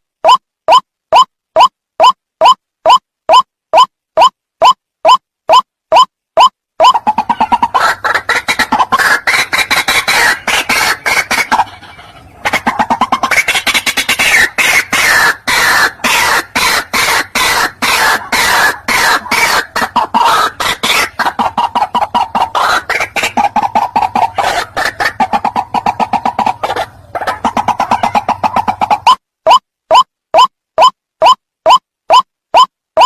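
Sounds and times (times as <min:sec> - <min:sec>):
bird harsh repeated calls: 0:00.2 - 0:33.0.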